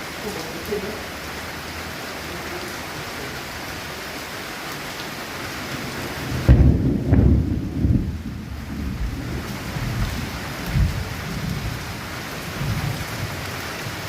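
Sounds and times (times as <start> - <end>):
heavy rain: 0.0 - 14.0
thunder rumbling: 5.8 - 14.0.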